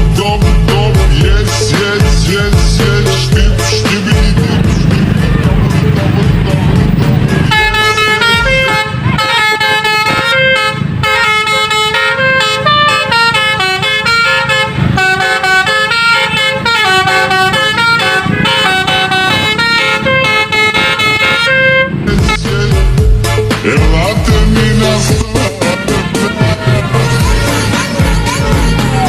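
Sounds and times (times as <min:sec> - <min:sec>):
multi-tone horn melody: 0:00.0 - 0:29.0.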